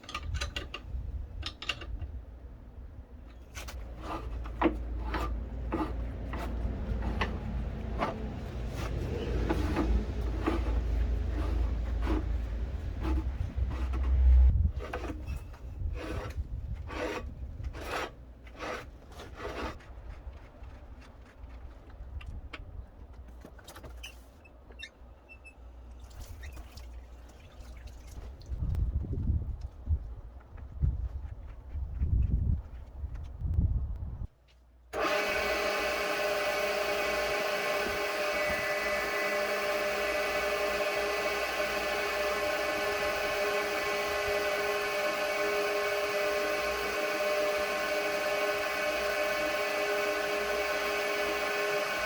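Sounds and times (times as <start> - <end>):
rough scraping strokes: 3.4 - 21.6
water pump running: 35.0 - 52.0.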